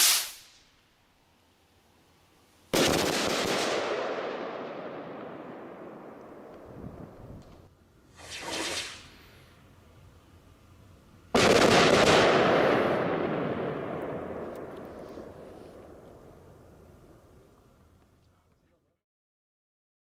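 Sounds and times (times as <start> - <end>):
firework bursting with loud bang: 0.0 - 0.7, 2.7 - 7.2, 8.1 - 9.2, 11.3 - 16.6
firework rocket launching hiss: 0.0 - 0.8, 8.0 - 9.8, 11.3 - 13.8.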